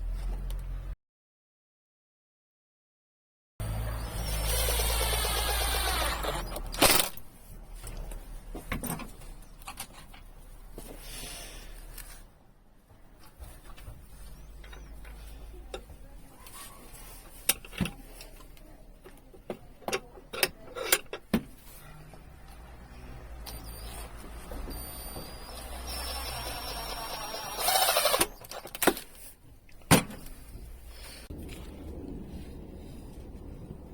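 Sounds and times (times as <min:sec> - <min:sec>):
power tool running: 0:03.6 - 0:07.1, 0:25.2 - 0:28.7.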